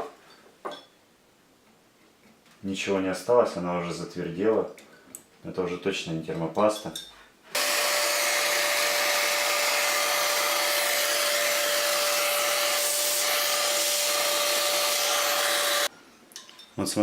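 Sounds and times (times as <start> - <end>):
vacuum cleaner running: 7.6 - 15.9.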